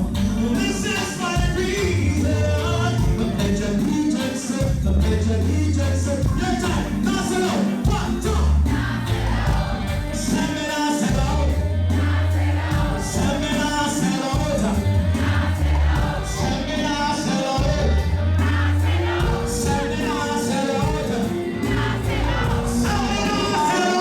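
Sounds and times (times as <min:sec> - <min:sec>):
heavy bass notes: 0:00.0 - 0:24.0
live gospel band music: 0:00.0 - 0:24.0
choir singing: 0:06.8 - 0:24.0.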